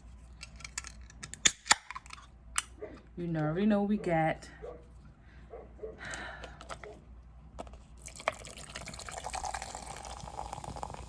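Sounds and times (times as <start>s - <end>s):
drink pouring into cup: 8.0s - 11.0s.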